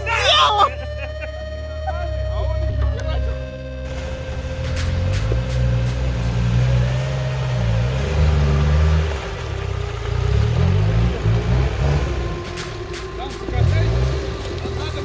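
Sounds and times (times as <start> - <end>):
off-road vehicle engine revving: 0.0 - 15.0.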